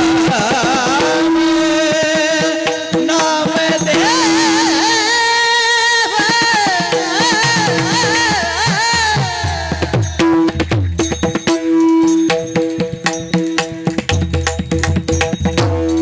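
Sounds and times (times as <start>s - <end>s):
man singing ornamented notes: 0.0s - 10.6s.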